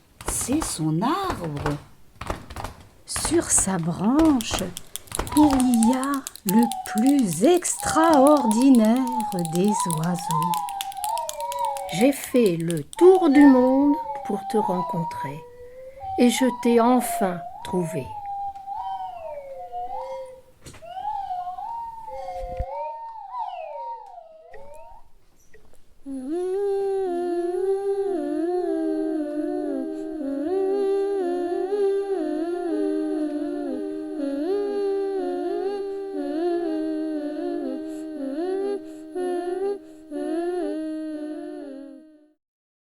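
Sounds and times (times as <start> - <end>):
two voices humming a melody: 3.2 - 16.2, 26.0 - 42.4
short sliding whistled tones: 4.0 - 15.0.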